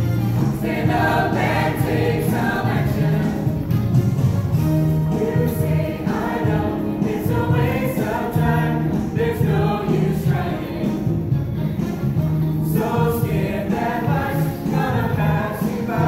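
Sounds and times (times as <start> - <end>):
choir singing: 0.4 - 3.7, 5.0 - 11.3, 12.6 - 16.0.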